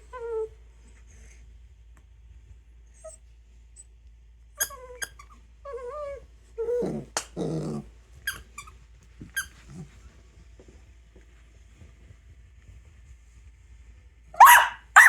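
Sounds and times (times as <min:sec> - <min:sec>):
squeaky toy squeaks: 0:04.6 - 0:05.3, 0:08.3 - 0:08.7
dog whining and grumbling: 0:04.6 - 0:08.6.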